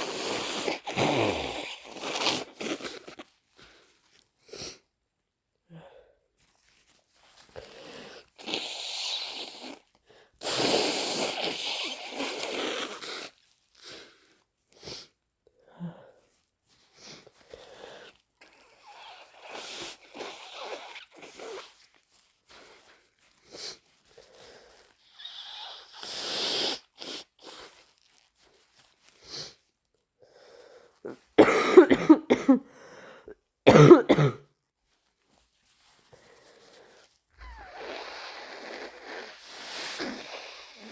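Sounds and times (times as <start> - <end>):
person blowing nose: 0.0 - 3.3, 7.6 - 15.1, 16.9 - 29.7, 30.3 - 34.4, 36.1 - 40.9
person coughing: 31.4 - 32.7, 33.7 - 34.5
person sneezing: 31.4 - 32.7, 33.7 - 34.5.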